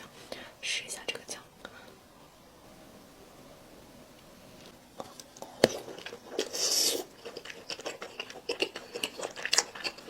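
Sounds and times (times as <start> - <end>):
faint room tone hiss: 0.0 - 10.0.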